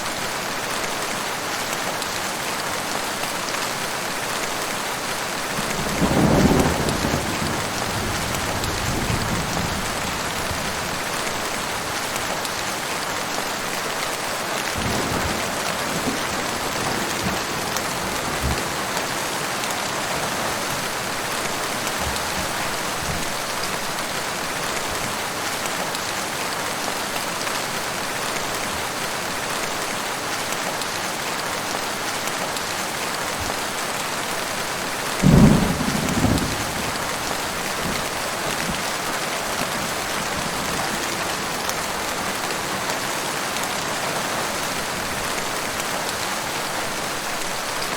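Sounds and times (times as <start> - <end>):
heavy rain falling: 0.0 - 47.9
thunder rumbling: 5.6 - 11.4, 14.8 - 23.8, 35.2 - 38.9.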